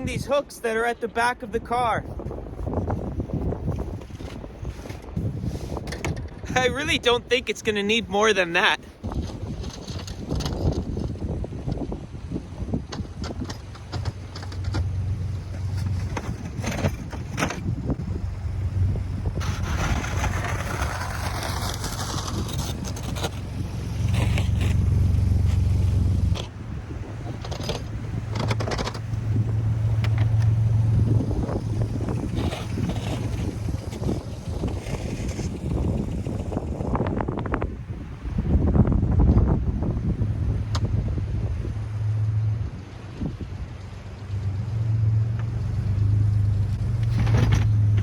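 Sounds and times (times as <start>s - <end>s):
minivan engine hum: 8.9s - 48.0s
irregular knocks and clatter: 9.0s - 11.9s, 12.8s - 17.8s, 27.2s - 30.6s, 46.7s - 48.0s
table scraping through snow: 9.1s - 11.1s, 19.4s - 26.5s, 32.1s - 36.0s.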